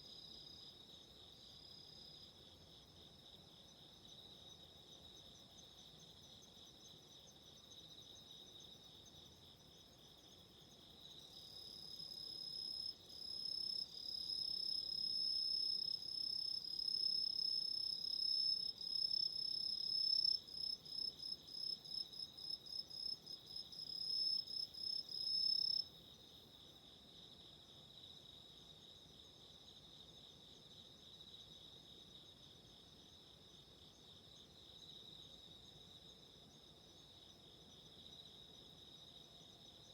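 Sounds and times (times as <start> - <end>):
insects chirping chorus: 3.6 - 26.3.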